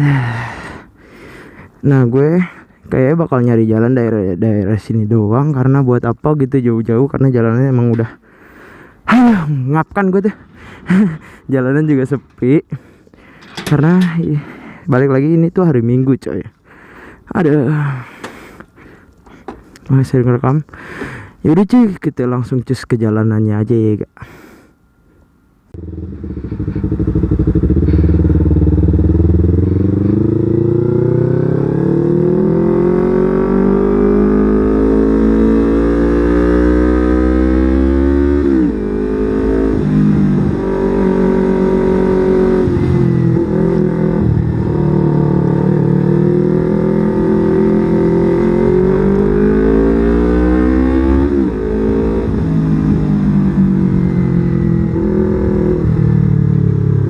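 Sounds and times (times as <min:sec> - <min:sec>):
motorcycle engine accelerating: 0:10.3 - 0:14.1, 0:25.8 - 0:57.0.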